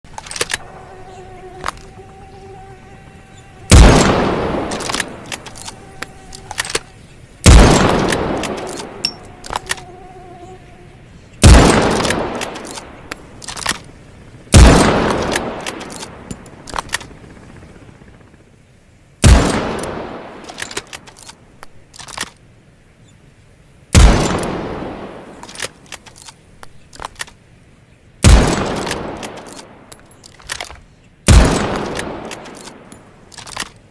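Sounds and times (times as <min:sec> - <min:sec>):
buzzing hum: 0:00.0 - 0:17.7
rifle shots echoing: 0:03.7 - 0:09.7, 0:11.4 - 0:13.0, 0:14.5 - 0:16.2, 0:19.2 - 0:20.5, 0:28.2 - 0:29.6, 0:31.3 - 0:33.0.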